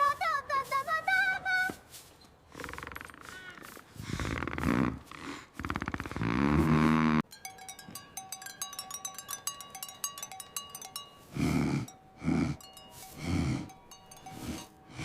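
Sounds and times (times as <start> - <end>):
plinking bell-like notes: 7.3 - 15.0.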